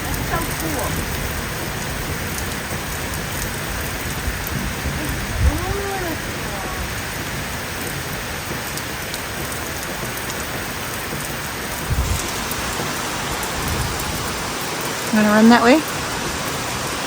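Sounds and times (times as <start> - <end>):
heavy rain: 0.0 - 17.0.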